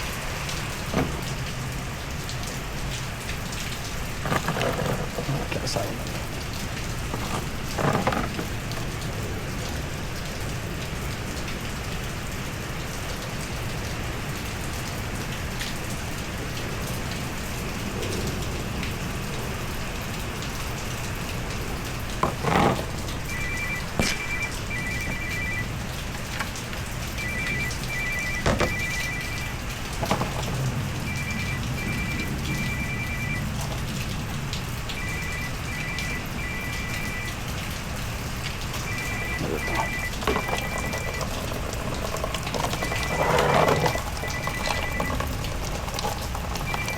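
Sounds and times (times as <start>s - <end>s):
knocks: 22.2s - 25.6s, 27.3s - 30.7s
phone ringtone two-tone beeps: 22.4s - 26.4s, 27.2s - 33.8s, 34.9s - 37.5s, 38.8s - 46.9s.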